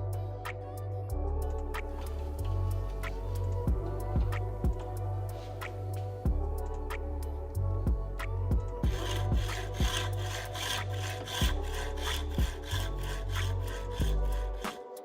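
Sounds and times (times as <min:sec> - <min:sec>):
music with bass beat: 0:00.0 - 0:14.6
hand saw cutting: 0:08.8 - 0:15.0.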